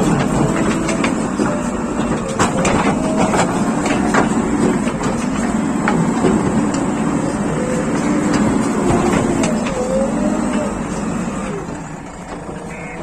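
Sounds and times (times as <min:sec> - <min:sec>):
diesel engine running: 0:00.0 - 0:13.0
sharp knocks and clatters: 0:00.0 - 0:13.0.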